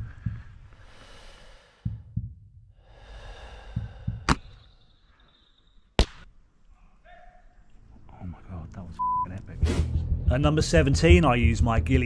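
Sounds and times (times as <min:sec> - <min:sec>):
soft low thumps: 0:00.0 - 0:00.9, 0:01.8 - 0:04.6, 0:09.6 - 0:12.0
person breathing heavily: 0:00.0 - 0:02.2, 0:02.8 - 0:04.8.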